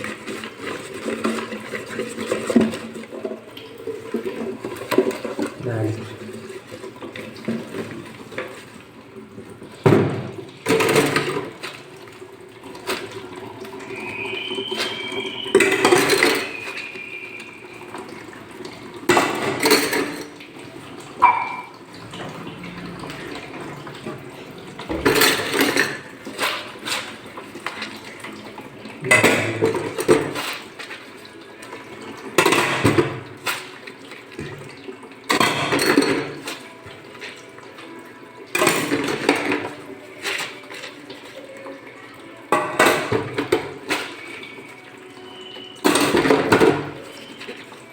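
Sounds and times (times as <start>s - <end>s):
tap water running: 0.0s - 47.9s
water gushing over plates: 0.0s - 47.9s
dishes clinking: 13.8s - 20.5s, 21.2s - 28.0s, 29.0s - 30.9s, 32.2s - 33.8s, 34.4s - 36.8s, 38.5s - 41.0s, 42.5s - 47.6s.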